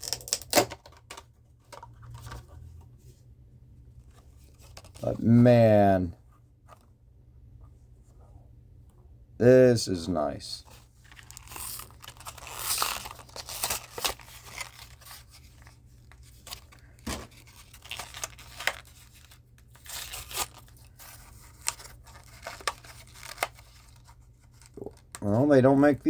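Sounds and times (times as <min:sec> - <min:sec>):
packaging tearing and crinkling: 0:00.0 - 0:01.0, 0:11.0 - 0:25.1.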